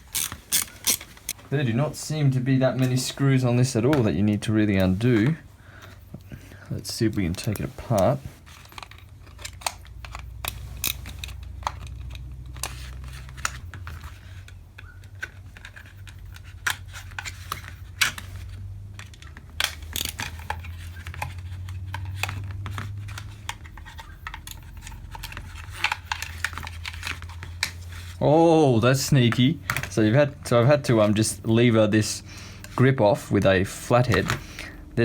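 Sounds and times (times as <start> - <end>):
screwdriver clicking and scraping: 0.0 - 1.4, 7.1 - 28.2.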